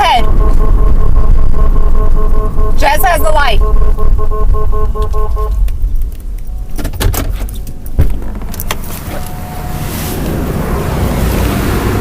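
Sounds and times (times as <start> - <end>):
pulsing electronic beep: 0.0 - 5.6
vehicle engine and road rumble: 0.0 - 12.0
sharp clicks and rattles: 4.9 - 8.9.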